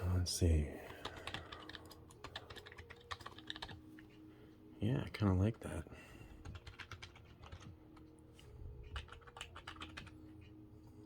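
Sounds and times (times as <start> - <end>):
keyboard keys clicking: 1.0 - 3.8, 6.4 - 8.1, 8.8 - 10.1.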